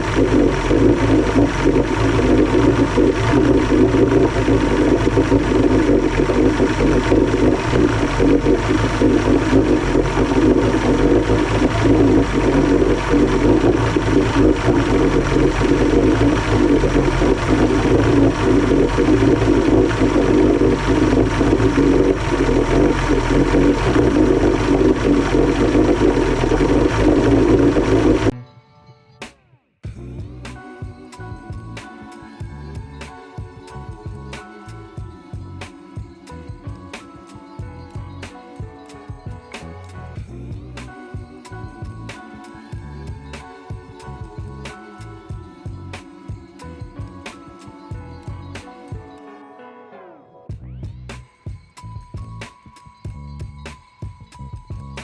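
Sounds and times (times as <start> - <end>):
outboard motor running steadily: 0.0 - 28.3.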